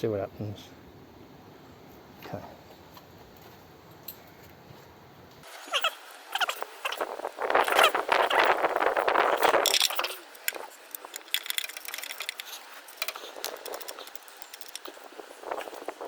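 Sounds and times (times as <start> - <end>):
scraping and rustling: 4.3 - 16.0.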